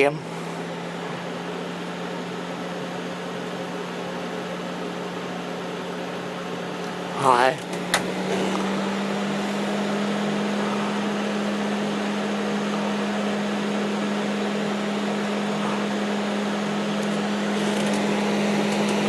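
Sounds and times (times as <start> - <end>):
vent fan motor hum: 0.0 - 19.0.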